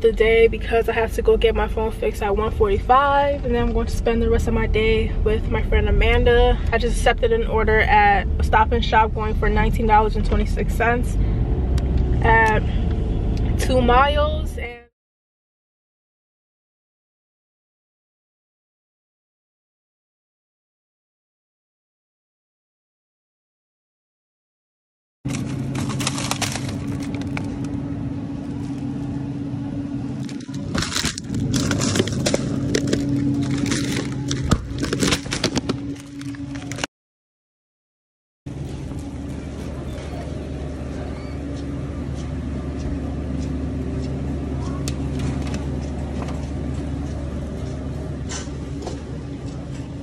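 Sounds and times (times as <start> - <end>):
car engine and road hum: 0.0 - 14.8, 25.3 - 36.9, 38.5 - 50.0
crackles and clicks: 25.3 - 27.8, 30.2 - 36.9.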